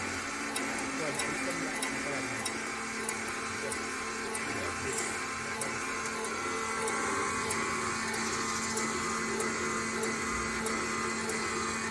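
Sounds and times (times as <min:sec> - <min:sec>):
electric motor hum: 0:00.0 - 0:11.9.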